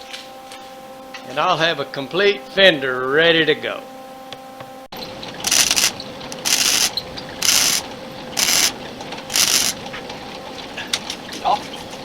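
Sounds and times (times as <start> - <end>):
sheet steel being cut: 5.4 - 9.8.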